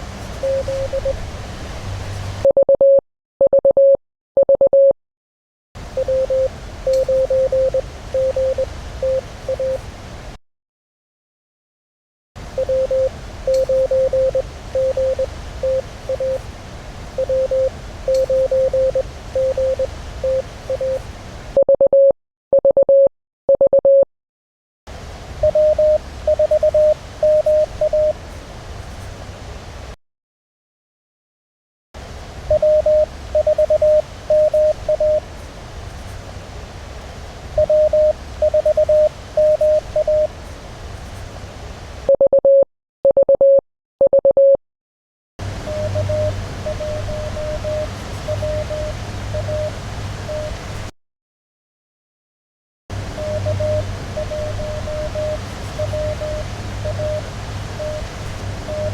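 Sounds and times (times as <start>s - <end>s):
morse code beeping tone: 0.4s - 1.2s, 2.4s - 5.0s, 6.0s - 9.8s, 12.6s - 16.4s, 17.2s - 21.0s, 21.6s - 24.1s, 25.4s - 28.2s, 32.5s - 35.2s, 37.6s - 40.3s, 42.1s - 44.6s, 45.7s - 50.6s, 53.2s - 58.1s, 58.7s - 58.9s
radio receiver hiss: 52.9s - 58.9s.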